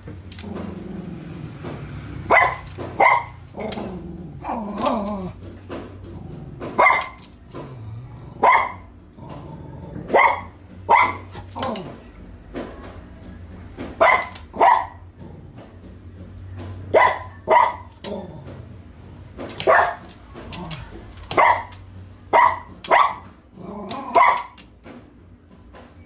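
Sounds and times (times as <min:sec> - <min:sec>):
dog barking: 0:02.2 - 0:03.8, 0:06.8 - 0:07.2, 0:08.4 - 0:08.9, 0:10.1 - 0:11.5, 0:14.0 - 0:15.0, 0:16.9 - 0:18.0, 0:19.5 - 0:20.1, 0:21.3 - 0:23.3, 0:23.9 - 0:24.6.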